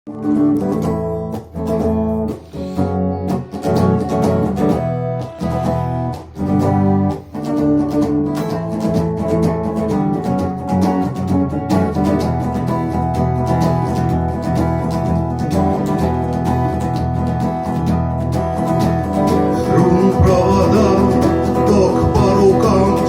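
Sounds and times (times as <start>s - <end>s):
acoustic guitar strumming chords: 0.1s - 23.0s.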